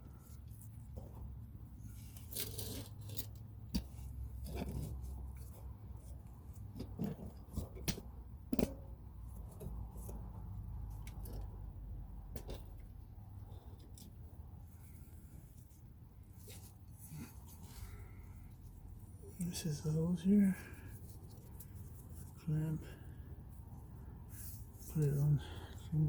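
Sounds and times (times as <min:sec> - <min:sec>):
steady low hum: 0:00.0 - 0:26.0
light clicks and knocks of hand work: 0:02.1 - 0:13.0.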